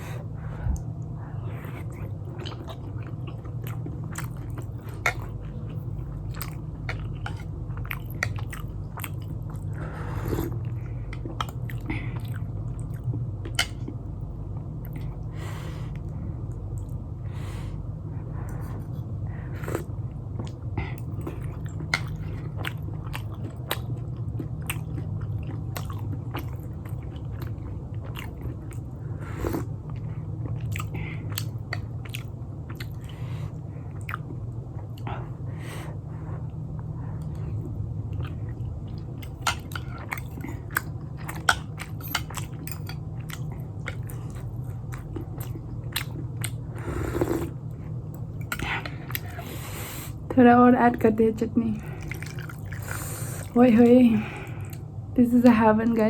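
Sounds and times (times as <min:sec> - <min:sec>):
low hum: 0:00.0 - 0:56.0
chewing and biting food: 0:00.7 - 0:15.3, 0:18.5 - 0:35.2, 0:36.4 - 0:49.6, 0:51.8 - 0:53.6
slurping: 0:46.8 - 0:47.6.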